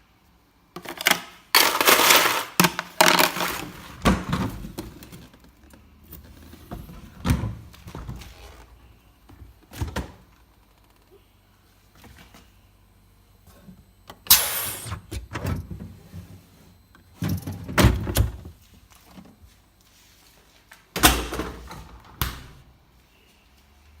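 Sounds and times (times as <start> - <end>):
refrigerator doors thudding shut: 17.2 - 18.5.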